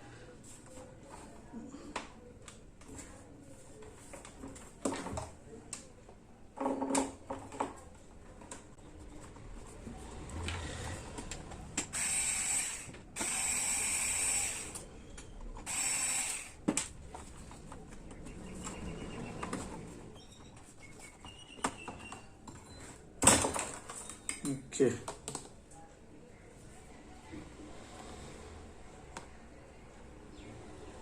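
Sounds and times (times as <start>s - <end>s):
small electric motor whirring: 11.9s - 14.8s, 15.6s - 16.6s.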